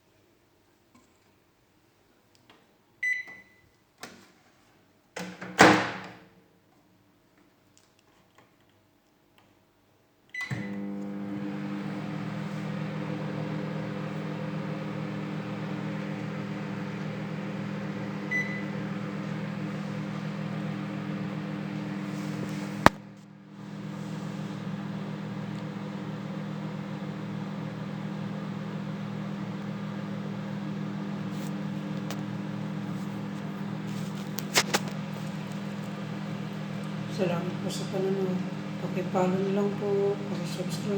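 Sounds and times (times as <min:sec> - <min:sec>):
microwave beep: 0:03.0 - 0:03.7, 0:10.4 - 0:11.0, 0:18.1 - 0:19.2
microwave humming: 0:10.4 - 0:40.9.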